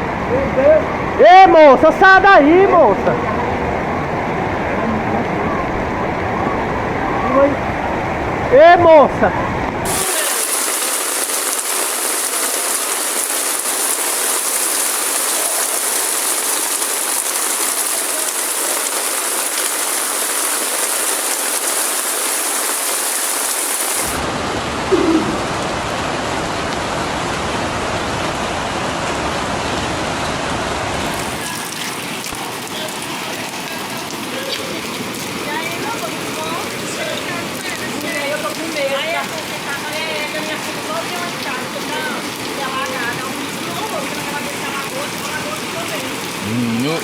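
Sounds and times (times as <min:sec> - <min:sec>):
heavy rain pouring: 0:09.5 - 0:47.0.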